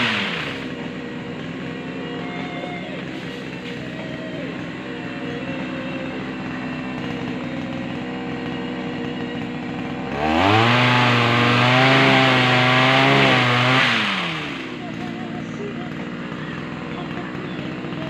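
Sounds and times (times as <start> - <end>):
small saw engine revving: 0.0 - 18.0.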